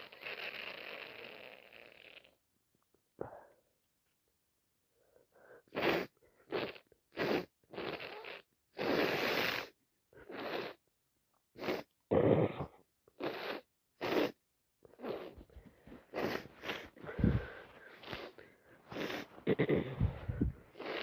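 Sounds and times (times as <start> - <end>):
woman sniffling: 15.5 - 21.0.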